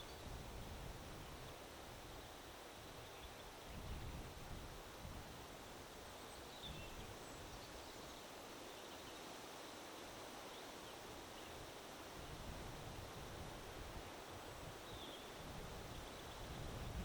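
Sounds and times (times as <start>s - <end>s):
faint bird chirps: 6.0s - 9.3s, 14.8s - 17.0s
wind blowing: 11.6s - 17.0s.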